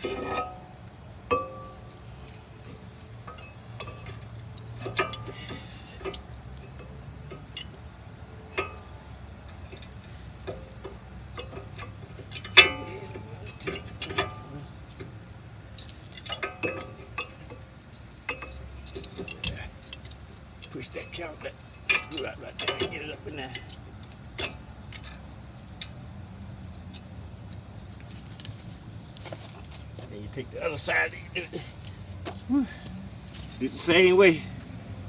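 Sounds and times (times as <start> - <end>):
metallic clicks and knocks: 0.0 - 26.1.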